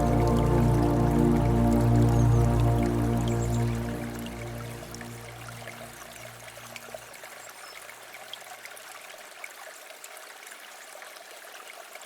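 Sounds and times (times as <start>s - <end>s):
low ambient music tones: 0.0s - 6.6s
water trickling and plinking: 0.0s - 8.0s
river flowing: 0.0s - 11.5s.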